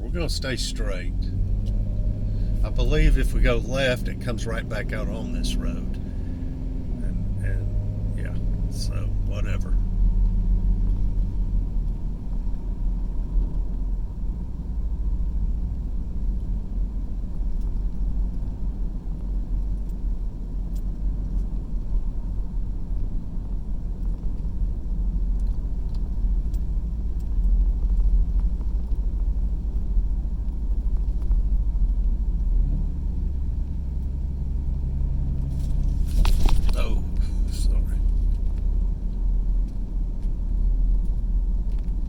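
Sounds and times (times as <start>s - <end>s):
car interior engine and tyre rumble: 0.0s - 42.0s.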